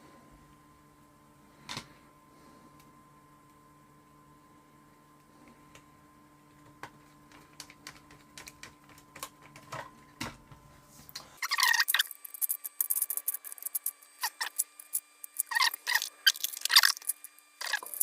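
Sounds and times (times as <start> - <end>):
low background hum: 0.0 - 18.0
squeaky rubbing and scrapes: 11.4 - 18.0.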